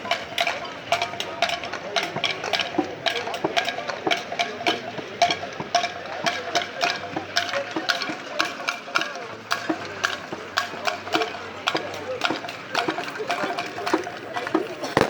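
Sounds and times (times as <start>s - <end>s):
campfire crackling: 12.4s - 15.0s.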